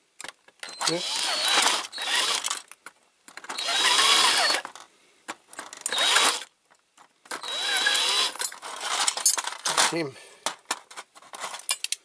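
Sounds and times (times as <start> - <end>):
small electric drill running: 0.7 - 2.5, 3.6 - 4.6, 5.9 - 6.5, 7.4 - 8.4.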